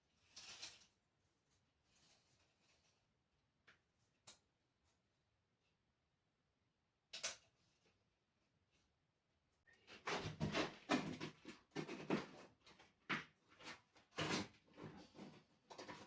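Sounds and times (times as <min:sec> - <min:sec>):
knocks and scrapes: 0:09.9 - 0:16.0.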